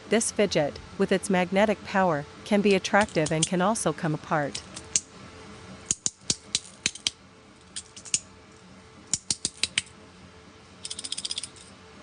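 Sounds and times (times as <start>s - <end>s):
magnetic pieces clicking together: 3.0s - 3.6s, 5.9s - 8.2s, 9.1s - 9.9s, 10.8s - 11.7s.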